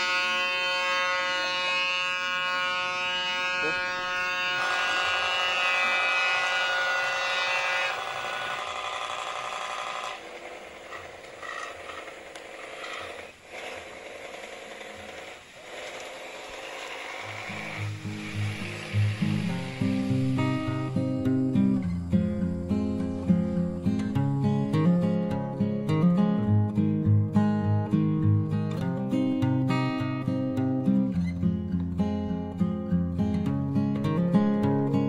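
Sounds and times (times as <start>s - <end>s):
toy steam boat engine putter: 7.9s - 20.7s.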